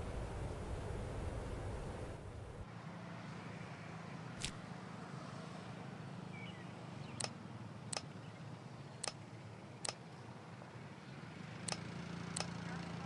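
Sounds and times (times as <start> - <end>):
sharp short clicks: 7.2 - 8.2, 9.0 - 9.2, 9.8 - 10.0, 11.6 - 12.6.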